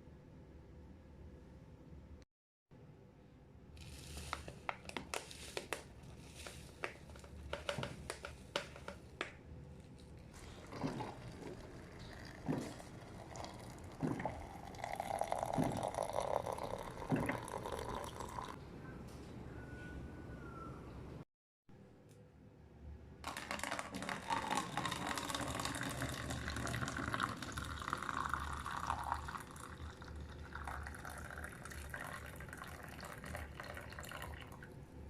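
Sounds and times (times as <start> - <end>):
water pouring into coffee press: 10.1 - 18.6, 23.3 - 34.8.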